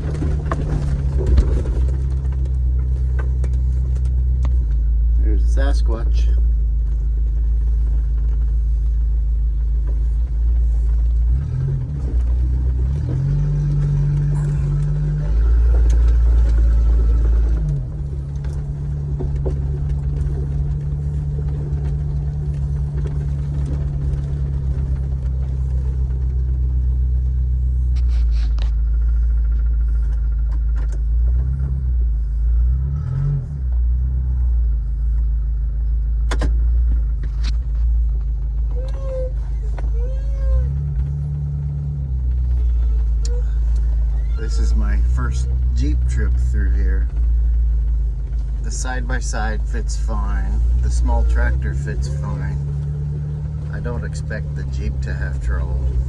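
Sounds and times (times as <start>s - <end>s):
knocks and rattles: 0.0s - 5.0s, 5.6s - 31.7s
car engine running: 0.0s - 56.0s.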